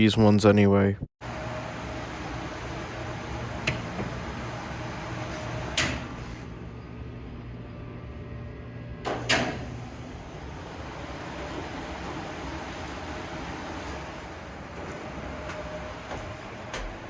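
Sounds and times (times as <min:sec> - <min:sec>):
elevator humming: 0:01.2 - 0:17.0
sliding doors knocking: 0:02.3 - 0:06.2, 0:09.1 - 0:17.0.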